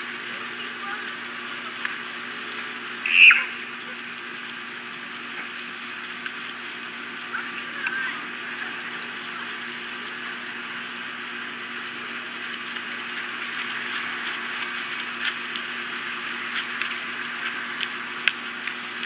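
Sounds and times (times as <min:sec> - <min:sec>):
steady outdoor hiss: 0:00.0 - 0:19.0
faint bird calls: 0:03.0 - 0:03.9
sharp ticks: 0:16.5 - 0:19.0.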